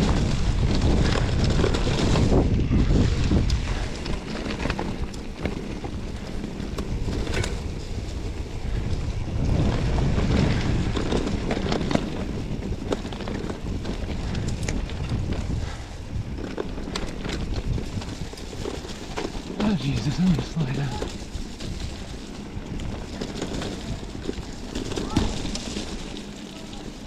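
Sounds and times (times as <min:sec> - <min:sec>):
bike clicks and rattles: 0:00.0 - 0:27.0
wind buffeting microphone: 0:00.0 - 0:27.0.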